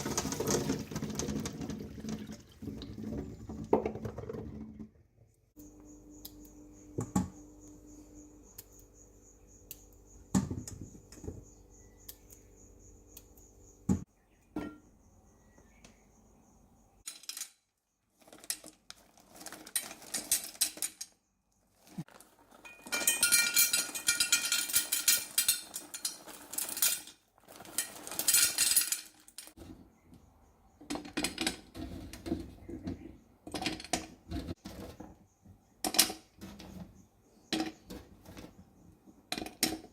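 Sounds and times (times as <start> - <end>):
dishes and utensils clinking: 22.6 - 29.5.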